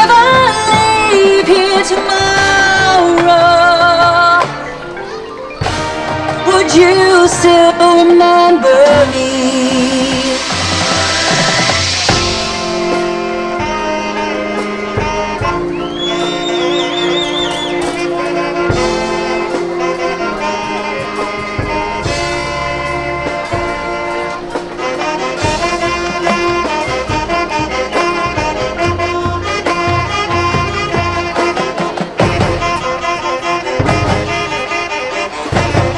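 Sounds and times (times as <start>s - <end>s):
brass sustained chords: 0.0s - 35.9s
drums: 0.0s - 35.9s
marching band playing: 0.0s - 35.9s
high note with vibrato: 9.4s - 35.9s.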